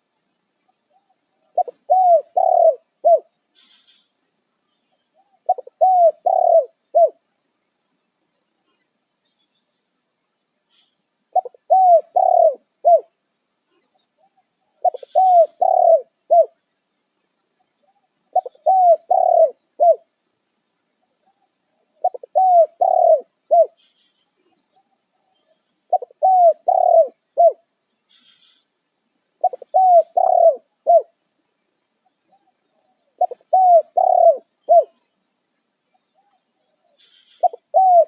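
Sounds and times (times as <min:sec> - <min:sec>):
dove cooing: 0:01.5 - 0:03.3, 0:05.2 - 0:07.2, 0:11.3 - 0:13.1, 0:14.8 - 0:16.6, 0:18.3 - 0:20.0, 0:22.0 - 0:23.8, 0:25.9 - 0:27.6, 0:29.4 - 0:31.1, 0:32.9 - 0:35.0, 0:37.1 - 0:38.0.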